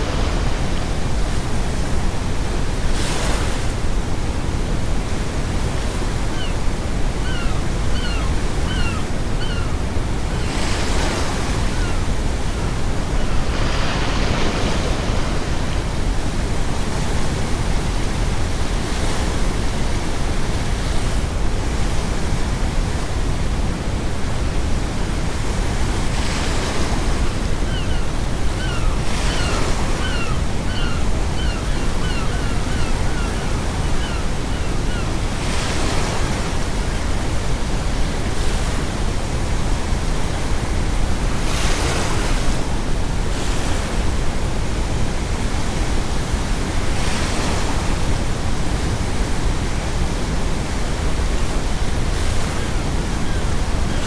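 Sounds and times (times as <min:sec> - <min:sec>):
ocean waves breaking: 0:00.0 - 0:04.3, 0:07.3 - 0:19.6, 0:23.8 - 0:54.0
seagulls calling: 0:06.4 - 0:16.3, 0:27.1 - 0:36.9, 0:52.4 - 0:54.0.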